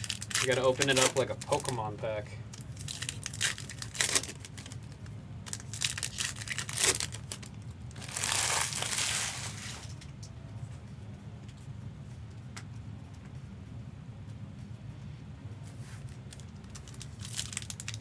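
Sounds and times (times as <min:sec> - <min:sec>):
foil pack crinkling and tearing: 0:00.0 - 0:10.1, 0:16.0 - 0:18.0.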